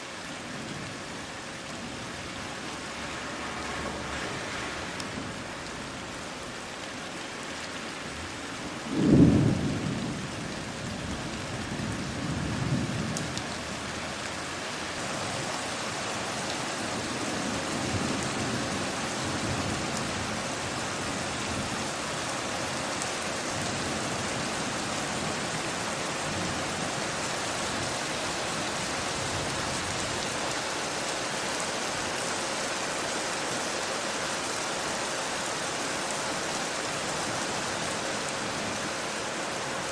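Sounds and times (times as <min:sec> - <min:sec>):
steady rain: 0:00.0 - 0:39.9
thunder rumbling: 0:08.7 - 0:13.4
thunderclap: 0:08.8 - 0:10.3.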